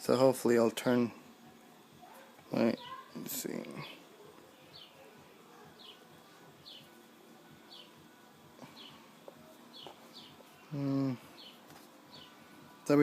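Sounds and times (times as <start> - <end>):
small bird chirping: 2.1 - 7.0, 7.6 - 8.0, 9.7 - 12.4.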